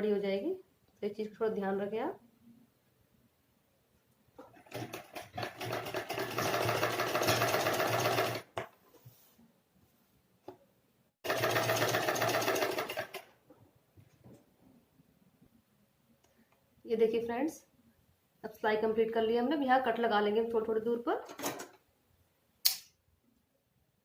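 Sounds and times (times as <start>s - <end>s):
sewing machine stitching: 4.4s - 8.6s, 11.2s - 13.3s
single click: 22.6s - 22.9s.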